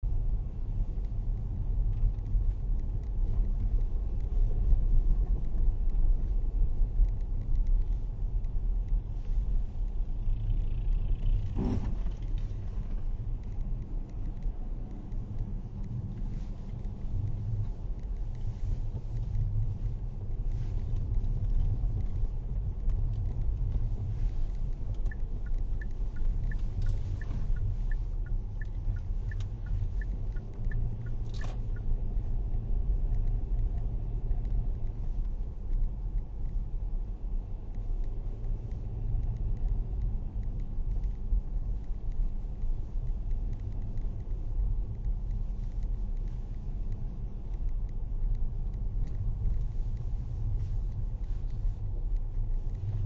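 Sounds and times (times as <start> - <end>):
car driving rumble: 0.0 - 53.0
light ticks: 0.1 - 53.0.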